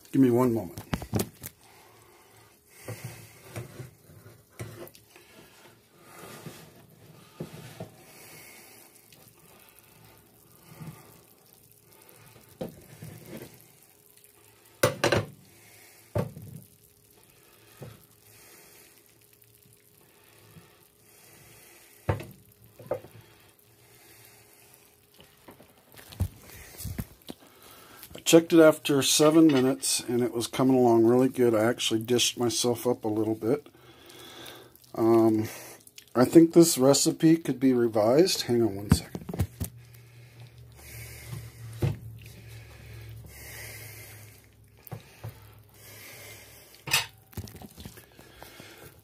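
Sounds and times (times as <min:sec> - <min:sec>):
dishes and utensils clinking: 0:46.8 - 0:47.2.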